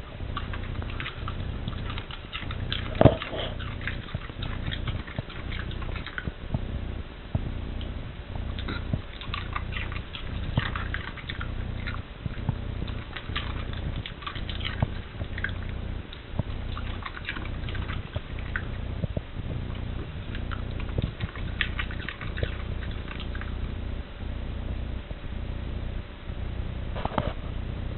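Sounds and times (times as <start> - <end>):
low steady hum: 0.0 - 27.9
dog crunching cabbage: 0.2 - 6.4, 7.8 - 23.8.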